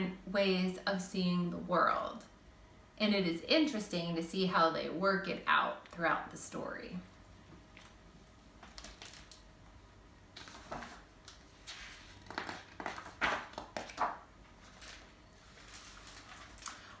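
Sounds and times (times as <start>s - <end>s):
book pages turning: 10.4s - 17.0s.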